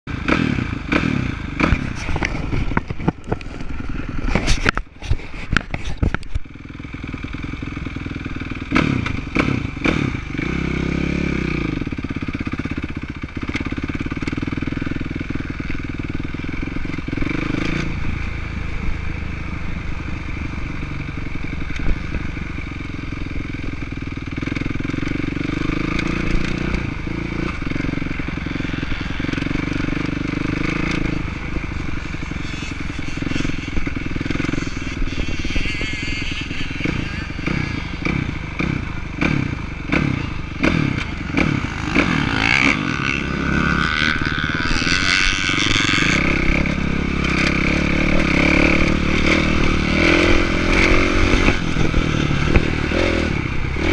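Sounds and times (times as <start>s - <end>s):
motorcycle engine revving: 0.1s - 53.9s.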